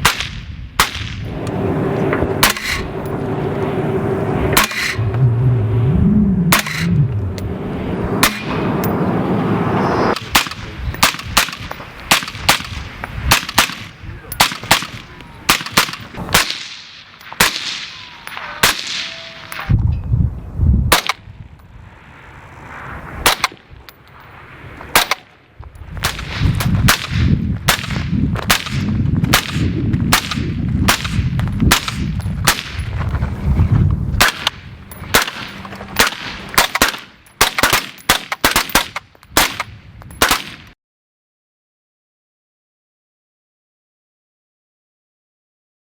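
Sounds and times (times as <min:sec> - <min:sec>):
low rumble: 0:00.4 - 0:13.4, 0:25.8 - 0:36.6
suppressed rifle shots: 0:34.2 - 0:40.6.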